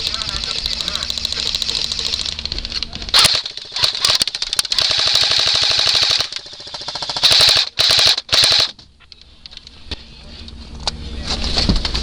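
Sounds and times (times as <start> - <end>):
airsoft guns firing bursts: 0.0 - 8.8.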